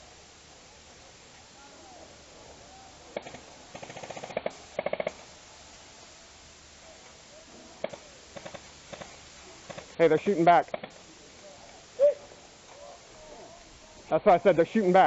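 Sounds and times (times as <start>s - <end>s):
airsoft rifles firing: 3.1s - 5.3s, 7.8s - 11.1s.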